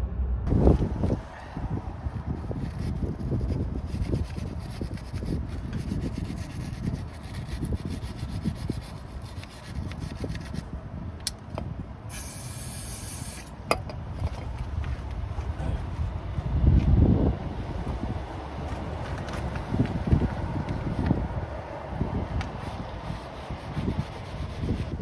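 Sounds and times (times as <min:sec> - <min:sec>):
rag rubbing and scraping metal: 0:02.2 - 0:10.7
short hiss: 0:12.1 - 0:13.6.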